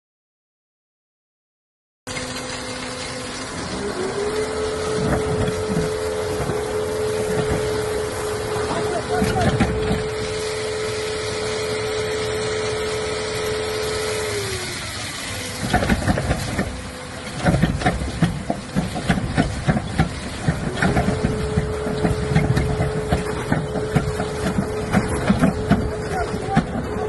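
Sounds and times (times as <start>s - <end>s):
drilling rig mechanical whine: 2.1s - 27.0s
knocking and clattering: 15.6s - 27.0s.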